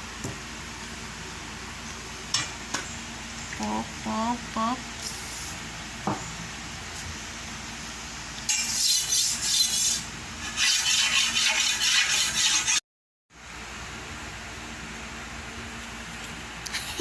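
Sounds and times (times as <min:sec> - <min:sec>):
blade scraping on sharpener: 0:08.5 - 0:12.8.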